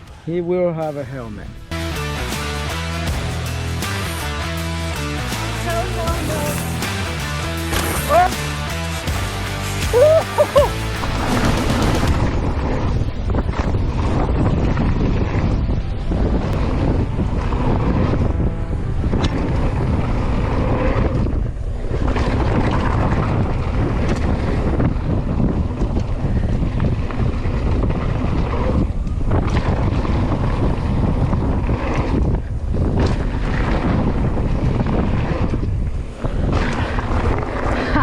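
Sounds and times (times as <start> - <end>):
wind rushing over microphone: 9.8 - 38.0.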